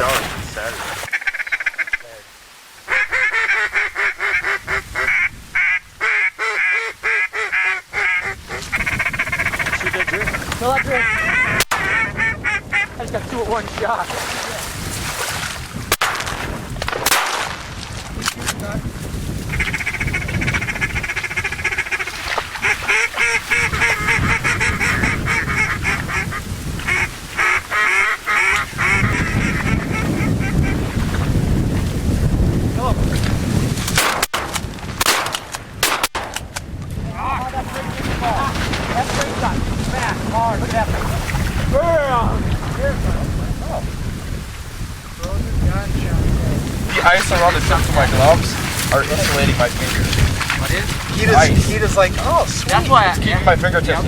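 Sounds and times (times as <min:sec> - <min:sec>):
rapid duck quacks: 0:01.0 - 0:02.3, 0:02.9 - 0:13.0, 0:19.5 - 0:31.0.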